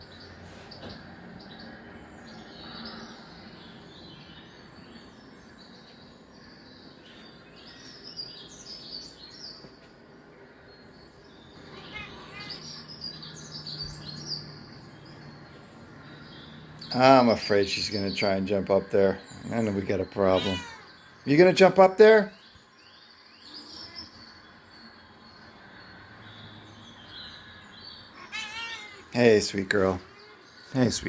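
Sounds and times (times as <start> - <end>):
songbirds chirping on tv speaker: 0.0 - 31.0.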